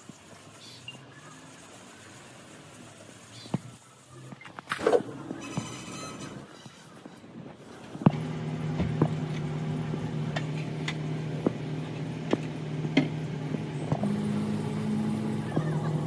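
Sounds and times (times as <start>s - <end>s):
machine humming: 8.1s - 16.0s
sharp clicks and knocks: 12.2s - 13.2s.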